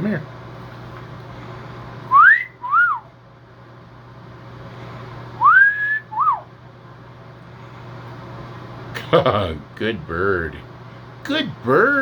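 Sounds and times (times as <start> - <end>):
wolf whistle: 2.1 - 3.1, 5.4 - 6.5.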